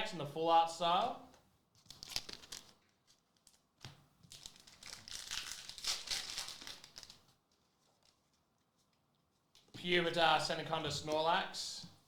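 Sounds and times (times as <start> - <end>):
foil wrapper crinkling: 1.8 - 8.6.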